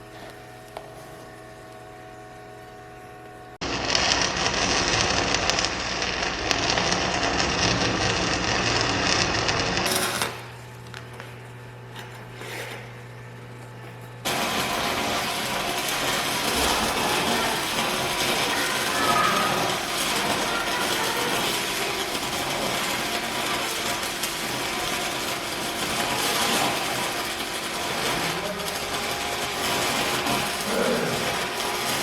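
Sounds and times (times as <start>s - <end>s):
arc welding crackling: 0.0s - 32.0s
low electrical hum: 0.0s - 32.0s.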